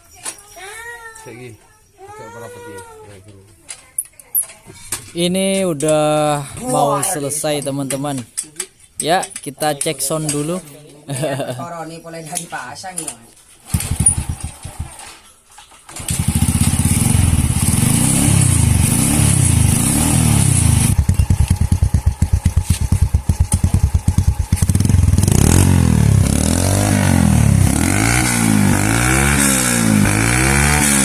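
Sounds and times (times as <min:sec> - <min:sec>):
motorcycle engine idling and revving: 0:13.6 - 0:15.2, 0:15.8 - 0:31.0.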